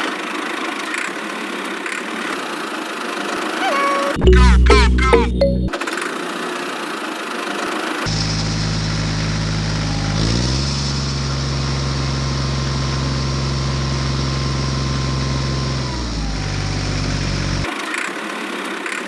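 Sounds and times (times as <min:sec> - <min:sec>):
small engine idling and revving: 0:08.2 - 0:17.7.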